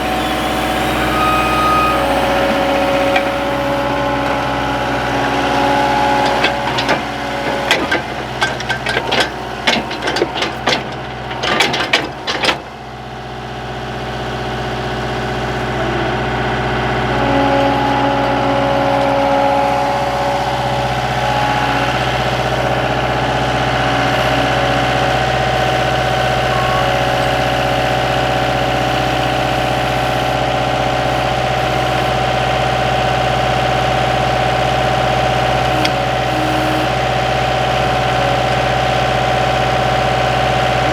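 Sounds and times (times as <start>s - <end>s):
skid steer engine running: 0.0s - 40.9s
sharp metal clanks and knocks: 6.2s - 12.7s.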